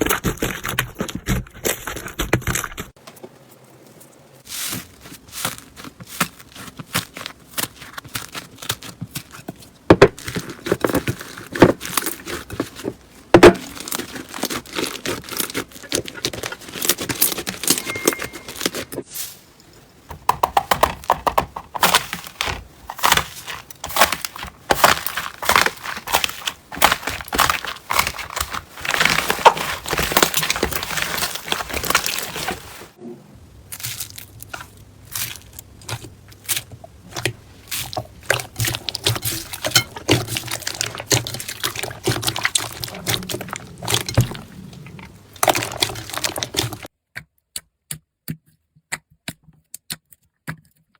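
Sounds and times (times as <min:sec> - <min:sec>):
slime crackling and popping: 0:10.1 - 0:18.8, 0:20.3 - 0:32.8, 0:33.6 - 0:46.9.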